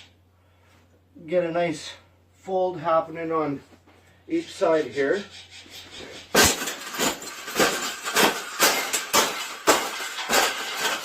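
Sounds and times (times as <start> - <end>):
sharp knocks or crunches: 6.2 - 11.0.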